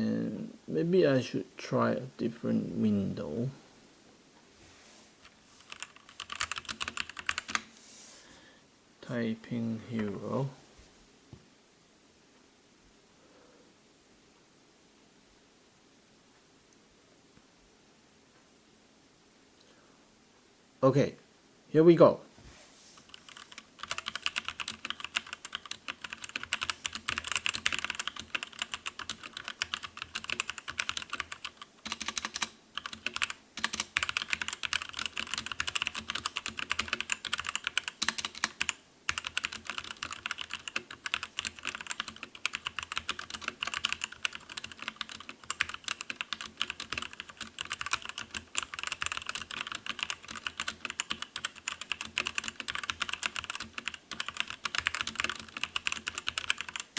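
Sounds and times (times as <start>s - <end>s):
typing on mechanical keyboard: 5.6s - 7.7s, 23.0s - 56.9s.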